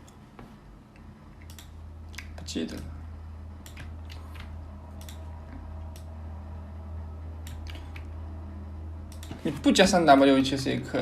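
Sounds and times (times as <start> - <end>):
low electrical hum: 0.0 - 11.0
keyboard typing clicks: 1.4 - 1.8, 3.6 - 5.3, 7.4 - 8.1.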